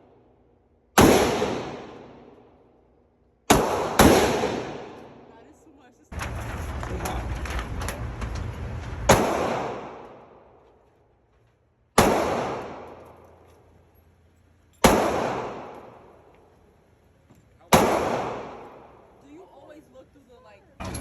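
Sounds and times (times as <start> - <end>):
handgun shots with echo: 1.0 - 2.2, 3.5 - 5.2, 9.1 - 10.4, 12.0 - 13.2, 14.8 - 16.2, 17.7 - 19.0.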